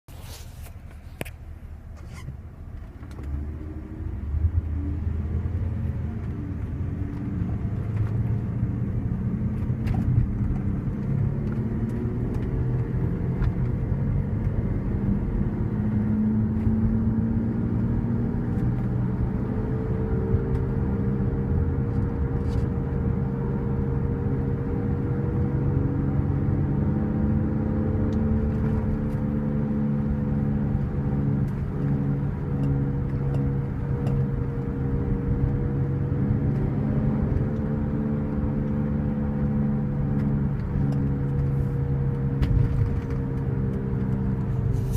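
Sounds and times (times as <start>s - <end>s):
car humming while driving: 0.1s - 44.9s.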